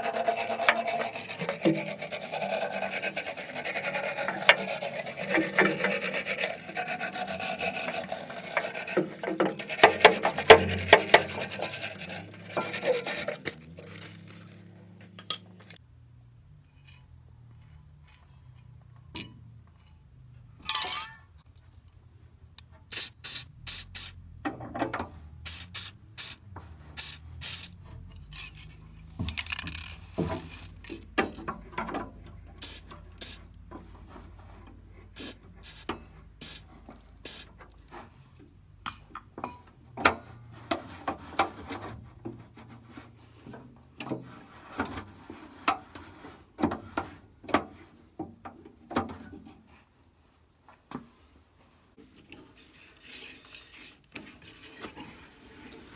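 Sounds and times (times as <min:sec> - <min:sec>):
scraping or rubbing: 0:00.0 - 0:15.8, 0:25.2 - 0:31.7, 0:32.6 - 0:38.2, 0:52.0 - 0:55.9
clicks and knocks of objects handled: 0:12.6 - 0:15.8, 0:27.6 - 0:33.8.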